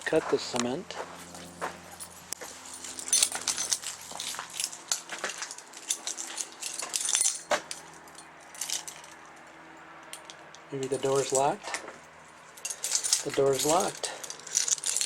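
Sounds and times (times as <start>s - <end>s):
keys jangling: 1.5s - 9.2s, 10.1s - 11.8s, 12.4s - 15.0s.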